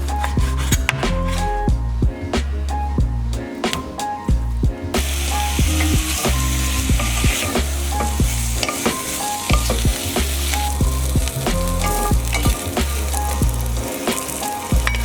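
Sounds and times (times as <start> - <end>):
background music: 0.0 - 15.0
food sizzling in a hot pan: 4.9 - 15.0.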